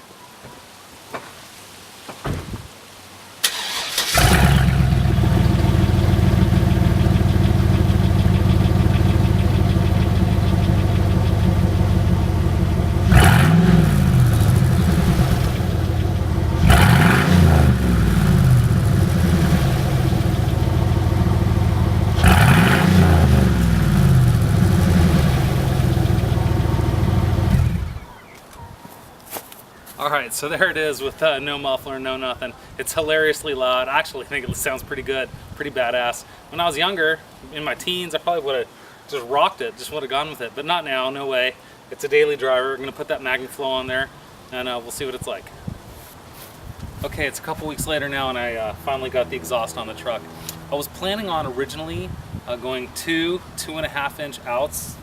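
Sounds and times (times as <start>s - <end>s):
engine cranking and starting: 3.4s - 28.0s
loud engine idling and revving: 4.2s - 28.0s.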